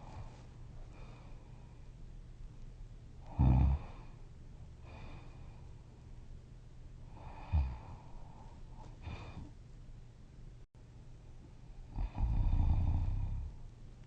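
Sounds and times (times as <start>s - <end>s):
person snoring loudly: 3.3s - 4.0s, 12.0s - 13.6s.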